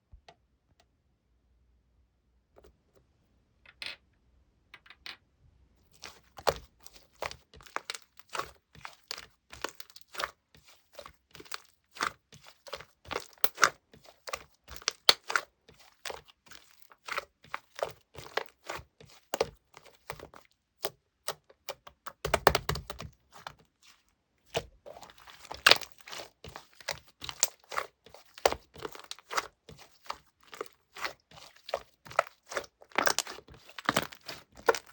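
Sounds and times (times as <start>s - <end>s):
slime popping and crackling: 6.0s - 20.3s, 24.9s - 34.9s.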